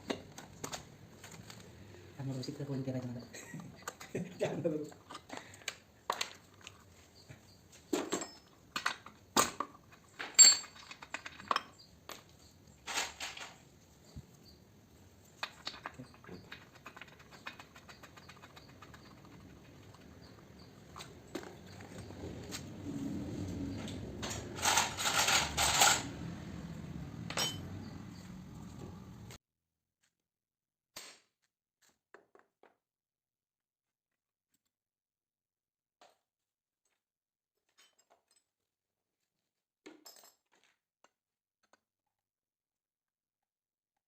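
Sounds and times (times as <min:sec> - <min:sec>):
metal parts clinking and clattering: 0:07.9 - 0:13.6, 0:23.7 - 0:26.2, 0:27.3 - 0:27.8
metallic clinks of tools: 0:10.4 - 0:11.9, 0:27.3 - 0:27.8.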